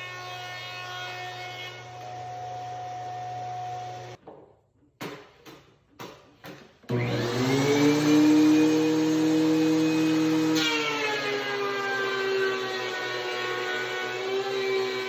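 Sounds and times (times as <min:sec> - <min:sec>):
power tool motor running: 0:06.9 - 0:12.4.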